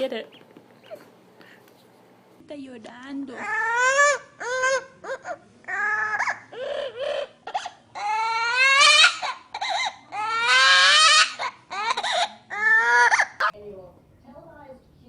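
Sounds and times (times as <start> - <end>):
baby-like crying wails: 3.3 - 13.5.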